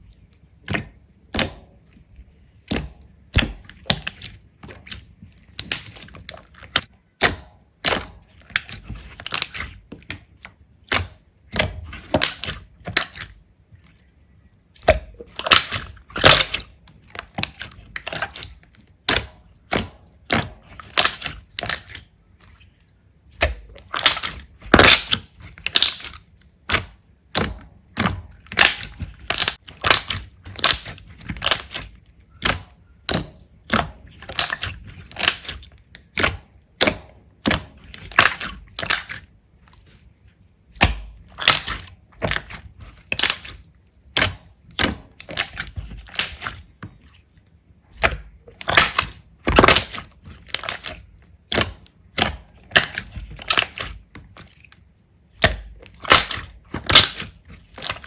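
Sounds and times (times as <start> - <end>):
slime popping and clicking: 17.2 - 22.0, 23.4 - 39.2, 40.8 - 46.6, 48.0 - 54.0, 54.7 - 58.0.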